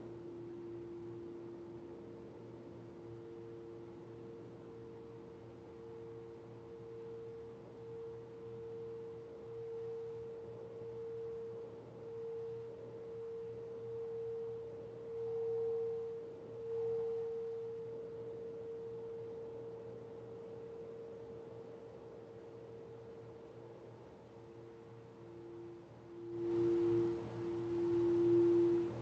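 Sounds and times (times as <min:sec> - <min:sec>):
singing bowl ringing tone: 0:03.1 - 0:21.7, 0:24.5 - 0:29.0.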